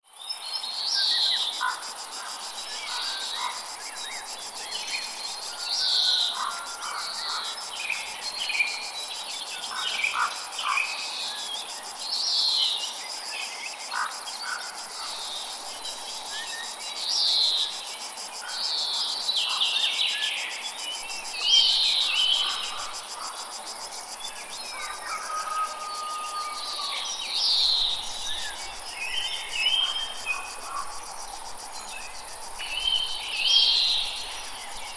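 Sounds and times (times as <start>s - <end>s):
insects chorus: 0.1s - 34.9s.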